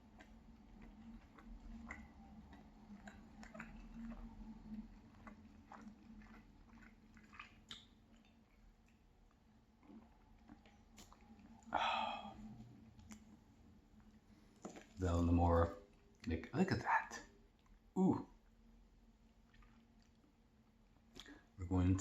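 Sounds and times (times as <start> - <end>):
chewing with wet mouth clicks: 0.0 - 15.0, 15.7 - 16.4, 17.5 - 21.6
low hum: 11.4 - 15.7.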